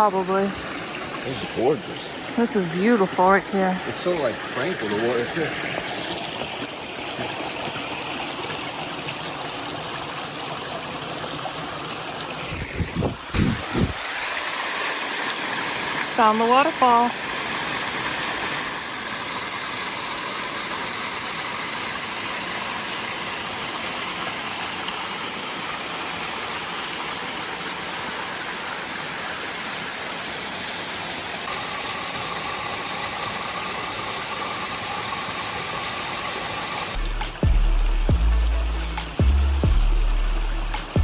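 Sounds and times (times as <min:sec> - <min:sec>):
small waterfall rushing: 0:00.0 - 0:41.0.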